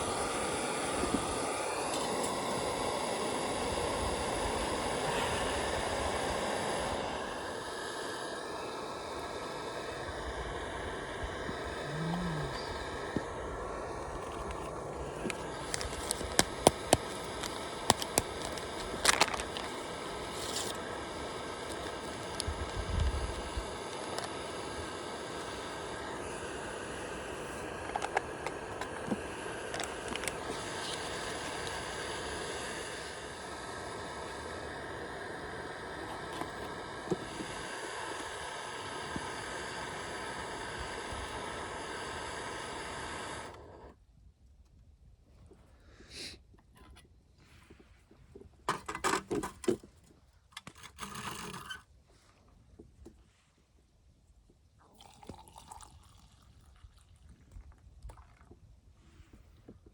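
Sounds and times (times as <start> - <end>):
wood campfire crackling: 0.0 - 43.9
steady hissing noise: 0.0 - 57.1.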